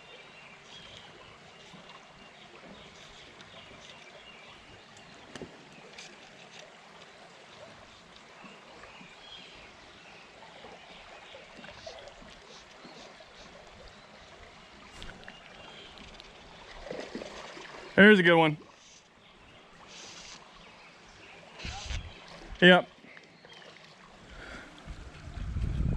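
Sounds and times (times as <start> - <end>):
river water rushing: 13.1 - 25.2.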